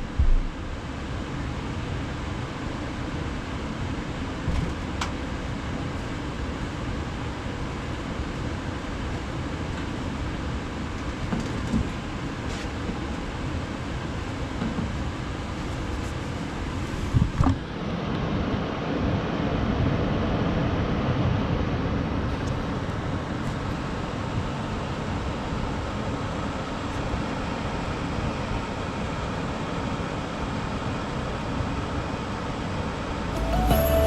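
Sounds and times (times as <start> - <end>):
loud thump: 0.0 - 0.5.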